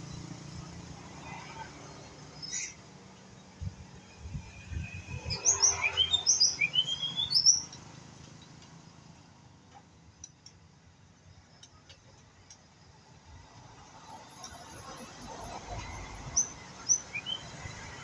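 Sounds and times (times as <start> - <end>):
bird song with whistled notes: 4.8 - 7.8, 16.3 - 18.0.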